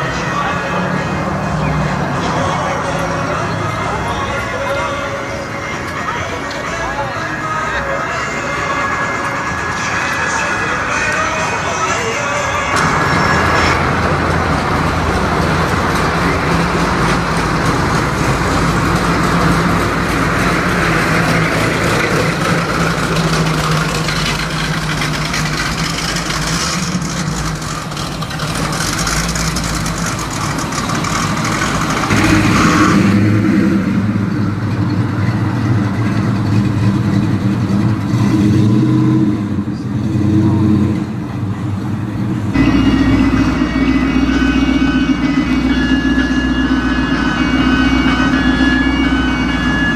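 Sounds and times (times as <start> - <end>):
car engines running: 0.0 - 49.9
deep engine with wavering pitch: 12.7 - 49.9.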